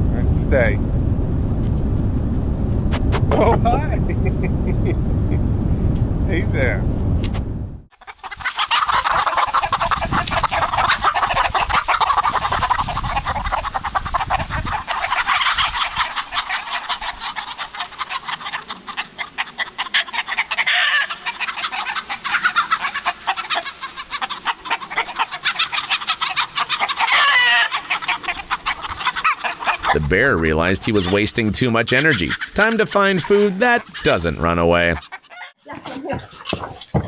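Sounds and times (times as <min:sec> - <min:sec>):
low rumble: 0:00.0 - 0:07.9
chickens clucking: 0:08.0 - 0:37.0.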